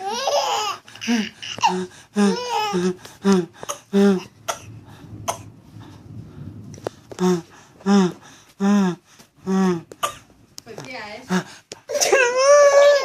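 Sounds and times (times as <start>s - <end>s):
baby laughing: 0.0s - 4.3s
sneezing or coughing: 9.5s - 10.3s, 11.4s - 12.4s.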